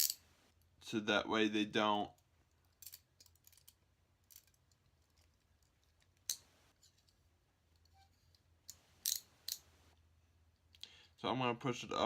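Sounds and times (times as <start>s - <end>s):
metallic handcuff clicks: 8.7s - 9.6s.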